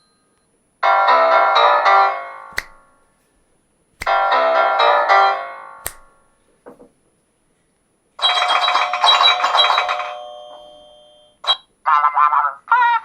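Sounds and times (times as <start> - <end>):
sharp click: 2.5 - 3.0, 4.0 - 4.3, 5.8 - 6.3.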